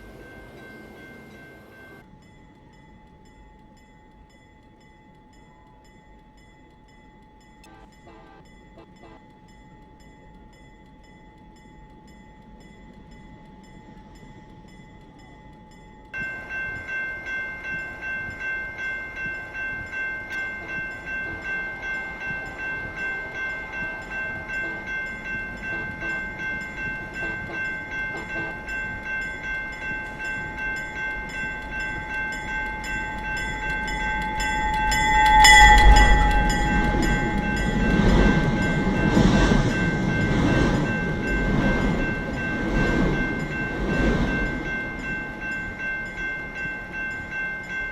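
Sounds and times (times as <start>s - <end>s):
warning bell ringing: 0.0s - 2.0s, 16.2s - 47.9s
train rumble: 0.0s - 4.3s, 5.1s - 47.9s
train horn: 7.6s - 9.5s, 20.3s - 29.0s.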